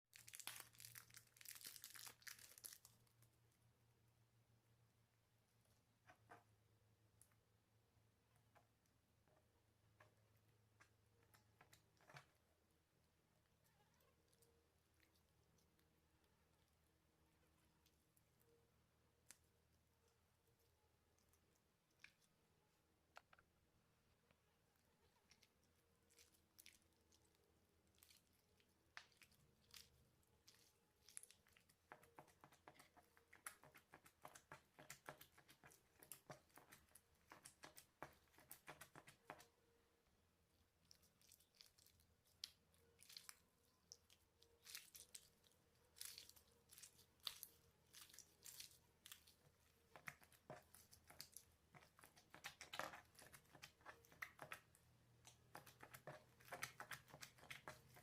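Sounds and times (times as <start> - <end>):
slime squishing with sticky clicks: 40.7 - 58.0.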